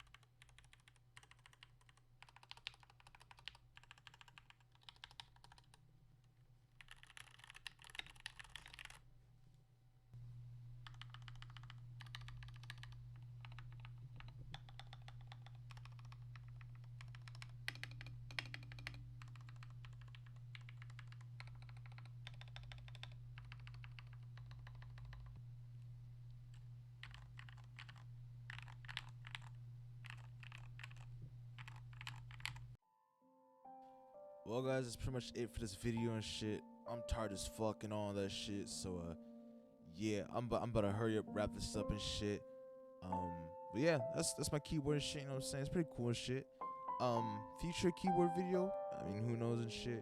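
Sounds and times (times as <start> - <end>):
mechanical keyboard typing: 0.0 - 5.8, 6.8 - 9.0, 10.8 - 25.4, 26.5 - 32.7
steady low hum: 10.2 - 32.8.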